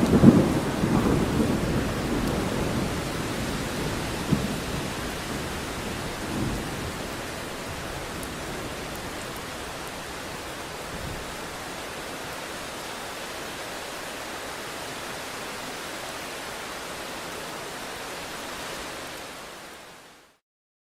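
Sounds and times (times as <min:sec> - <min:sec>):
thunder rolling: 0:00.0 - 0:08.8
heavy rain: 0:00.0 - 0:20.4.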